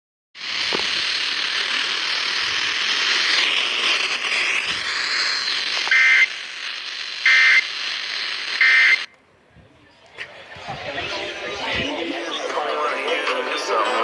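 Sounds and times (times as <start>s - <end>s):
loud radio static hiss: 0.4s - 9.1s, 10.2s - 14.0s
screechy digital data bursts: 0.4s - 9.1s.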